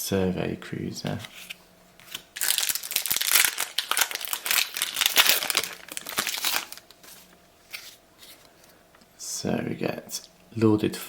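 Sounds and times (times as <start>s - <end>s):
wrapper tearing and crinkling: 2.1s - 8.0s.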